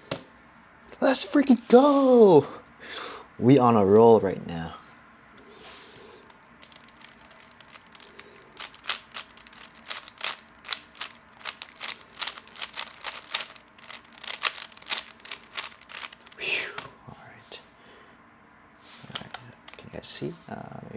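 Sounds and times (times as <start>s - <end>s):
puzzle cube layers clacking: 6.3s - 16.4s.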